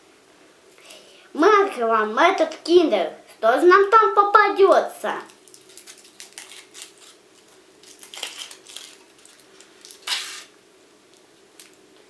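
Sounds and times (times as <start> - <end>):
foil wrapper crinkling: 5.2 - 11.8.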